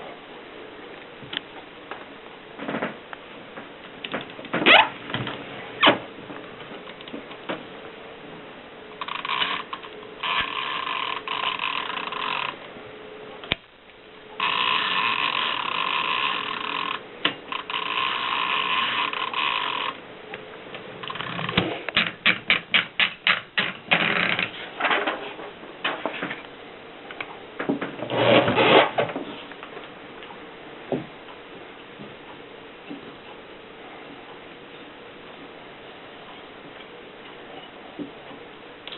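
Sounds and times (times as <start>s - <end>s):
typewriter rasping mechanical noise: 9.0s - 12.6s, 14.4s - 20.0s.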